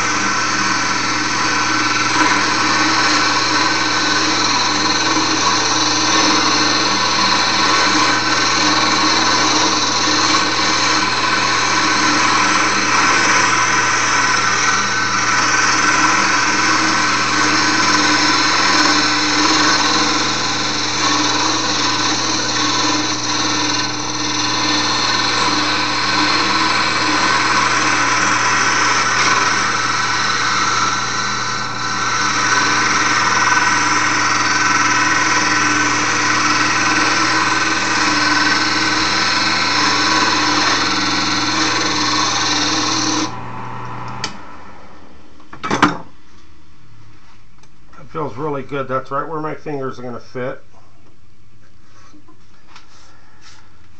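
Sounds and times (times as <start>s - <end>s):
tool hissing on spinning wood: 0.0s - 43.4s
wood lathe motor whine: 0.0s - 45.9s.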